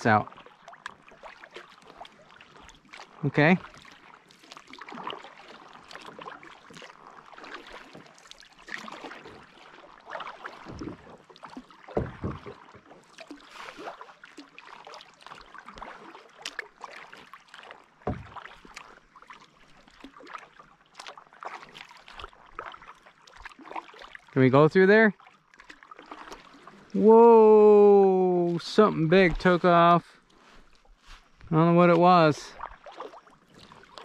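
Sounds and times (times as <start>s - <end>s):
paddles splashing in water: 0.0s - 34.0s
dull low knocks: 11.9s - 12.8s, 18.0s - 18.4s.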